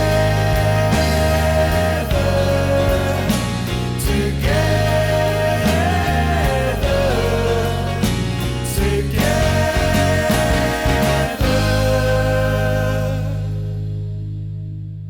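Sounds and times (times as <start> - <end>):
sliding melody line: 0.0 - 13.5
bass: 0.0 - 15.0
drum hits: 8.0 - 12.3.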